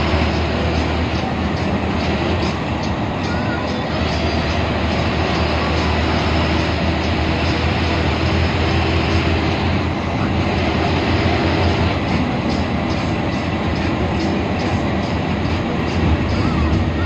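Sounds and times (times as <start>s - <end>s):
bus engine rumble: 0.0s - 17.0s
road and tyre noise: 0.0s - 17.0s.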